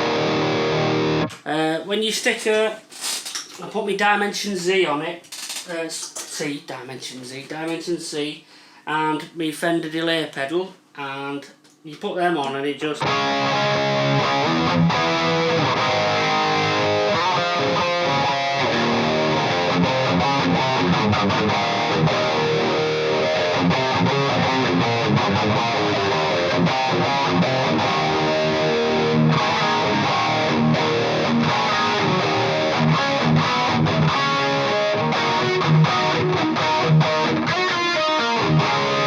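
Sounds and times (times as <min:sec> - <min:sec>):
electric guitar chords and notes: 0:00.0 - 0:01.4, 0:13.0 - 0:39.0.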